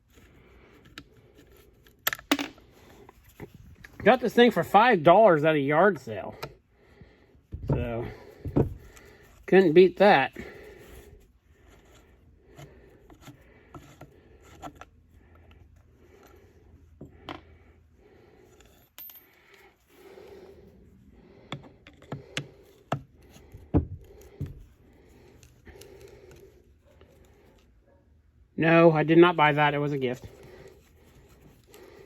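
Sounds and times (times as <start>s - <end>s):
screwdriver clicks and scrapes: 21.5s - 27.7s.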